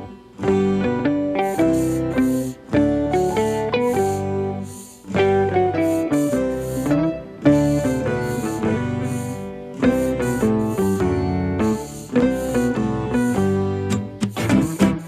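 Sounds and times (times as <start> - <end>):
plucked guitar melody: 0.0 - 15.0
light percussion beat: 1.4 - 15.0.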